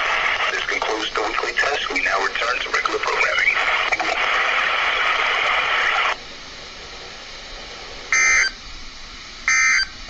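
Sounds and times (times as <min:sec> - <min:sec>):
radio static hiss: 0:00.0 - 0:06.2.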